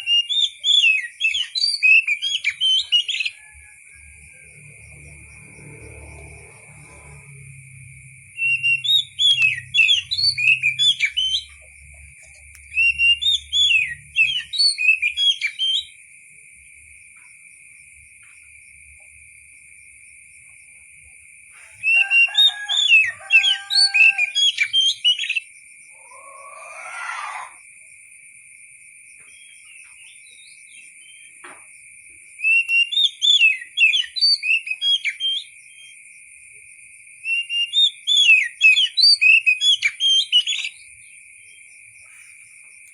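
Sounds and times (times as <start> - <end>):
bird singing whistled notes: 0.0 - 3.6, 8.3 - 16.0, 21.8 - 27.3, 29.2 - 31.4, 32.4 - 36.0, 37.3 - 40.9.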